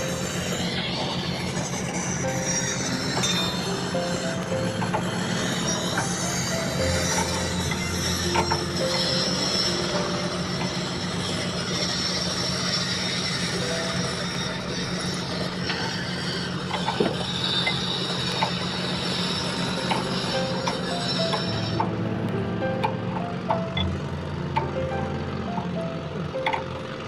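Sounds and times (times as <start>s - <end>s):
diesel engine idling: 0.0s - 27.0s.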